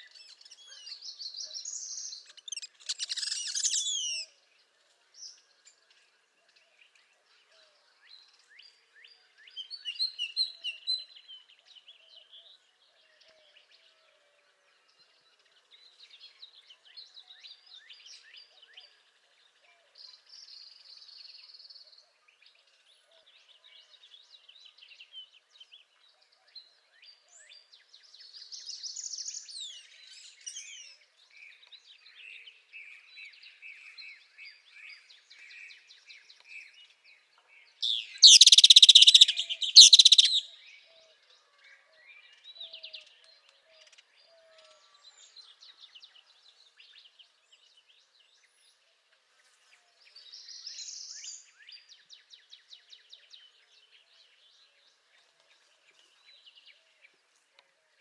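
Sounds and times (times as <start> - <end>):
bird singing buzzy trills: 38.2 - 40.4.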